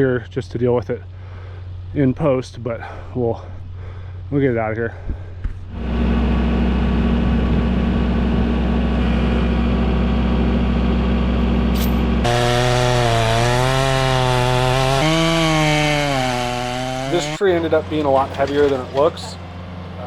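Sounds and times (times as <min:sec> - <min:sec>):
chainsaw cutting wood: 0:12.2 - 0:17.4.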